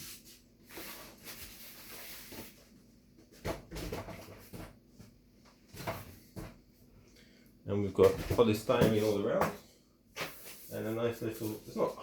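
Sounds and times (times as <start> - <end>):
cardboard scraping and rustling: 0.0 - 4.8.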